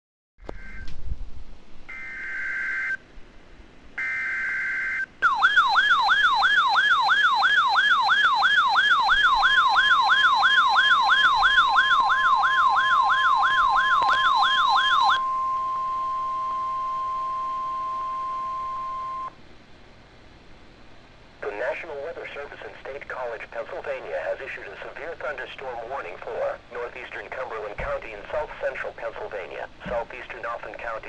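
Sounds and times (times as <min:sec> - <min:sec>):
warbling siren alarm: 0:00.5 - 0:00.9, 0:01.9 - 0:03.0, 0:04.0 - 0:19.4
steady warning alarm tone: 0:01.9 - 0:03.0, 0:04.0 - 0:19.4.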